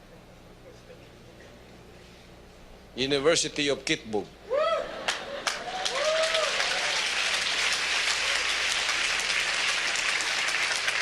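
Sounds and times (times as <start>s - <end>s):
congregation applauding: 5.1s - 11.0s.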